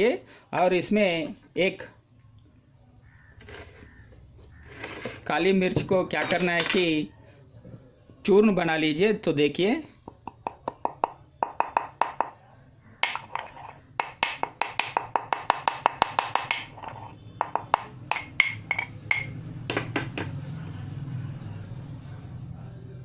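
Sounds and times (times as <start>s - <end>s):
peppercorn being pounded: 10.0s - 12.4s, 13.0s - 20.2s.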